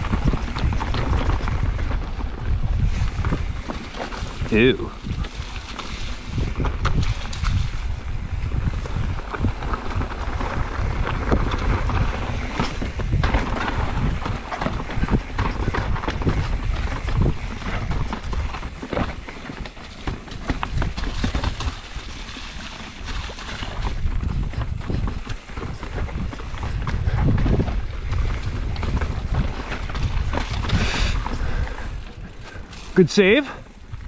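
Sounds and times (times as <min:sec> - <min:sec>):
bike rattling: 0:00.0 - 0:34.0
wind rumble on microphone: 0:00.0 - 0:34.0
tyres crunching over rocks: 0:08.4 - 0:34.0.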